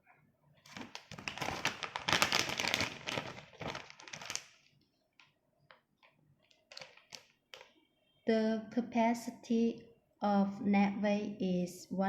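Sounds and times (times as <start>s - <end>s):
foil pouch crinkling: 0.7s - 5.8s, 6.4s - 7.7s.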